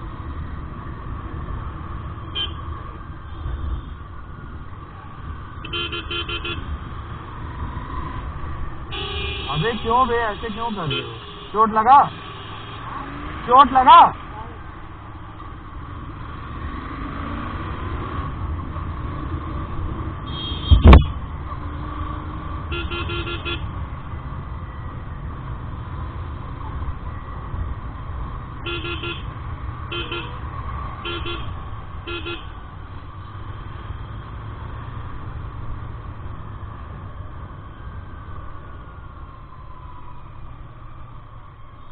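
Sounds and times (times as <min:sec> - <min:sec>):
road riding rumble: 0:00.0 - 0:41.9
vehicle horn honks: 0:05.6 - 0:06.6, 0:08.9 - 0:12.8, 0:20.3 - 0:21.1, 0:22.7 - 0:23.6, 0:28.7 - 0:29.3, 0:29.9 - 0:30.4, 0:31.0 - 0:31.5, 0:32.1 - 0:32.5
loud thump: 0:20.7 - 0:21.1.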